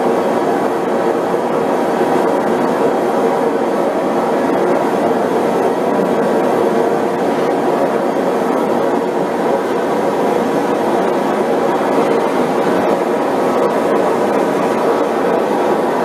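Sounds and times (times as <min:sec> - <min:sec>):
gas forge burner roaring: 0:00.0 - 0:16.0.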